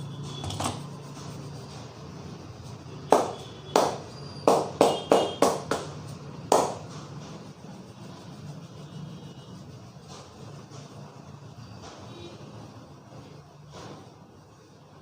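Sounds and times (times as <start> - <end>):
hands clapping on a head: 3.1 - 6.8.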